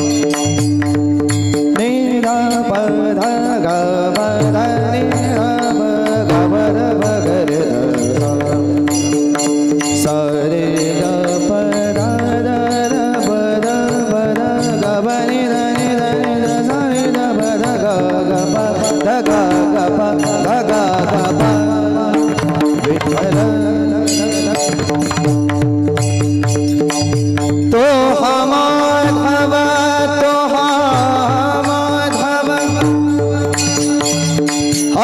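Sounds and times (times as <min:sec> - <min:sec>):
hand drum beat: 0:00.0 - 0:03.4, 0:04.1 - 0:35.0
wavering devotional melody: 0:00.0 - 0:35.0
small hand cymbals: 0:30.5 - 0:35.0.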